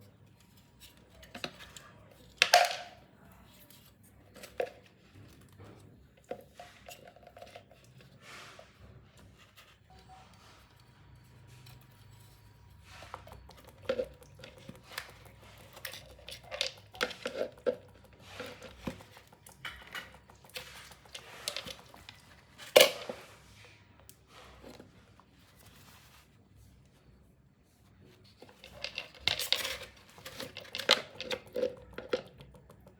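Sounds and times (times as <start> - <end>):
hands handling parts and tools: 11.8 - 26.3, 28.1 - 32.9.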